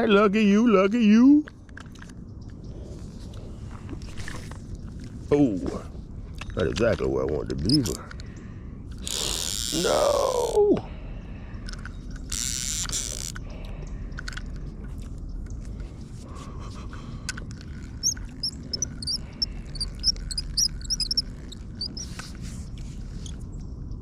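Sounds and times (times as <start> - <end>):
low rumble of wind: 0.0 - 24.0
small bird chirping: 17.5 - 24.0.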